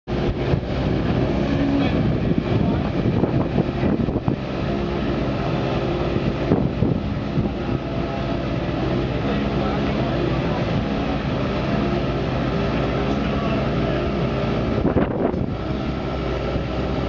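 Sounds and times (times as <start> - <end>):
car engine idling: 0.1 - 17.0.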